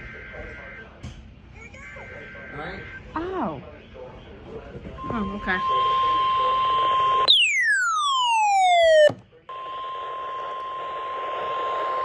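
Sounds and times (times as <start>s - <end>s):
steady alarm tone: 5.1s - 10.2s
electronic tone sweeping down: 7.3s - 9.1s.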